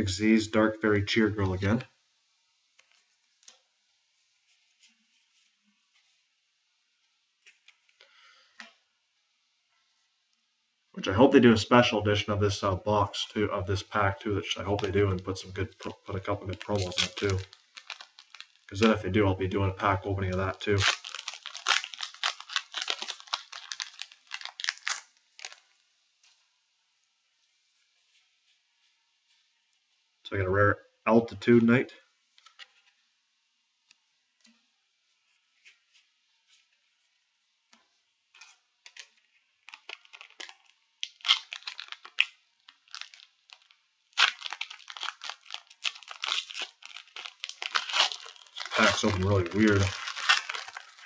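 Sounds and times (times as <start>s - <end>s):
foil pack crinkling: 13.2s - 25.9s, 38.4s - 51.0s.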